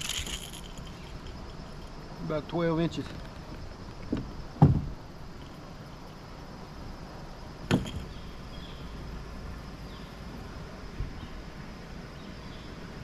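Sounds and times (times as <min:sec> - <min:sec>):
outdoor background: 0:00.0 - 0:13.0
soft thump: 0:04.0 - 0:04.9.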